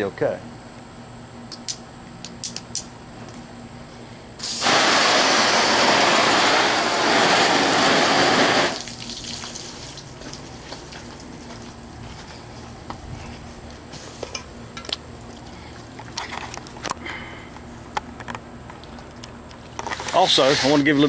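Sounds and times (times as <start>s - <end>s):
hose spray on tarp: 4.4s - 10.0s, 20.0s - 21.0s.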